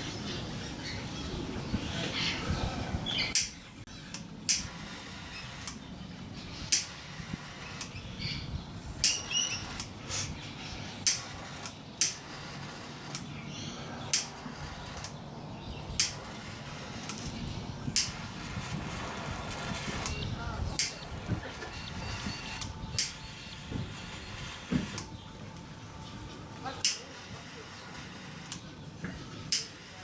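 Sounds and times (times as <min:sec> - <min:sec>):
clicks and taps on wiring parts: 0:03.4 - 0:04.8, 0:06.7 - 0:07.0, 0:11.0 - 0:12.3, 0:14.1 - 0:15.2, 0:16.0 - 0:16.3, 0:18.0 - 0:18.3, 0:20.8 - 0:21.7, 0:22.6 - 0:23.9, 0:26.8 - 0:27.1, 0:28.5 - 0:29.8.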